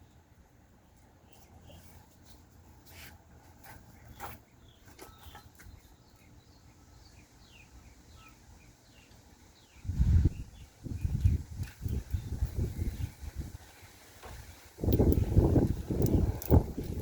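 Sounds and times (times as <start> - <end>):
bird chirping: 3.9 - 13.4.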